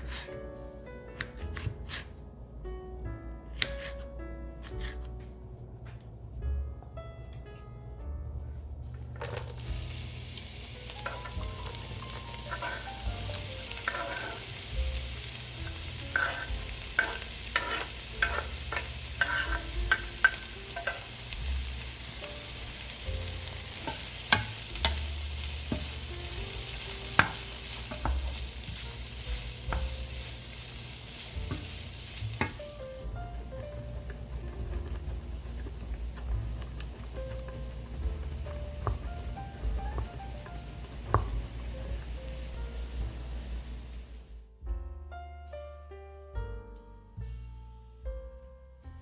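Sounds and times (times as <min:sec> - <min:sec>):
food sizzling in a pan: 0:09.2 - 0:44.4.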